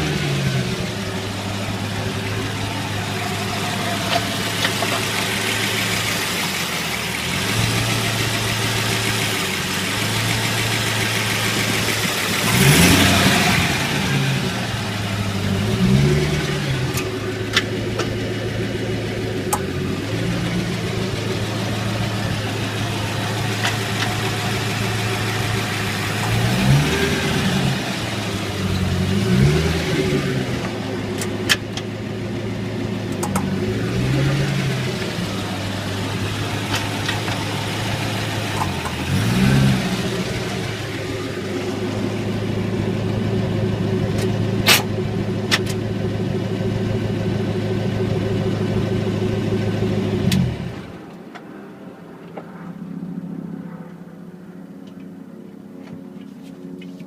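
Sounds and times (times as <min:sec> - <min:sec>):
car engine running: 0:00.0 - 0:57.0.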